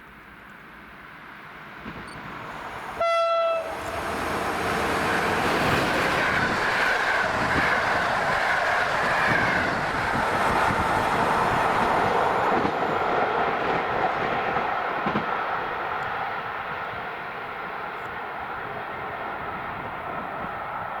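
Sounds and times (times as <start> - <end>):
train rolling on rails: 0.2 - 21.0
train horn blast: 3.0 - 3.7.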